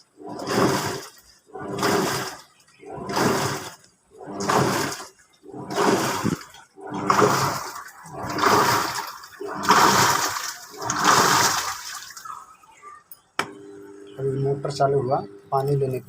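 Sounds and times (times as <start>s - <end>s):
washing machine swishing water: 0.0s - 12.8s
low motor hum: 0.0s - 16.0s.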